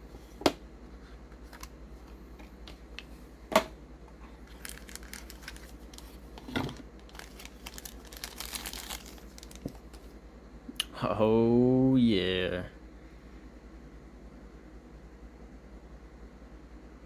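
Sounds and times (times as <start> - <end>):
packaging crinkling: 4.4 - 10.1.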